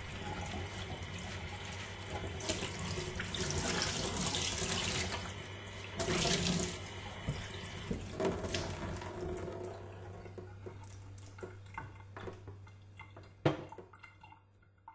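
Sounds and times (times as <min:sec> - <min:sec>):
tap water running: 0:00.0 - 0:14.9
water drips: 0:09.8 - 0:14.9
small knocks in sink: 0:13.2 - 0:13.9.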